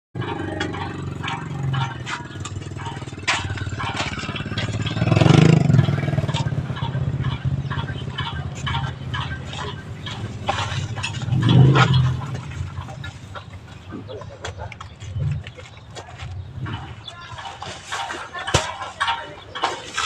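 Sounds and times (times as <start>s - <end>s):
sharp knocks and clatter: 0.2s - 20.0s.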